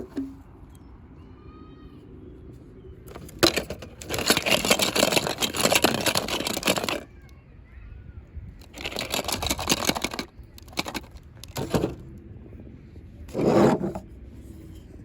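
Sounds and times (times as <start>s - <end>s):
packaging crinkling and rustling: 3.1s - 7.0s, 8.6s - 12.0s.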